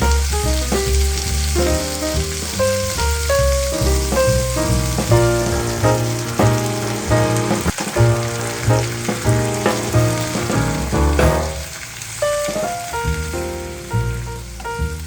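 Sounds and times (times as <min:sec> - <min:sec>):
stir-fry sizzling in oil: 0:00.0 - 0:15.0
background music: 0:00.2 - 0:11.8.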